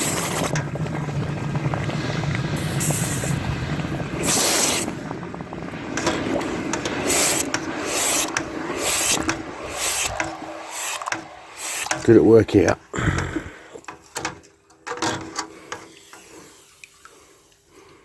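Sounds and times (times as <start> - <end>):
rough scraping on metal: 6.8 - 12.5, 15.0 - 16.9.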